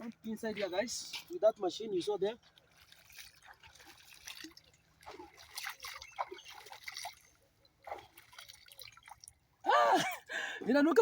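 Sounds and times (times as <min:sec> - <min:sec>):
water trickling and splashing: 0:00.0 - 0:11.0.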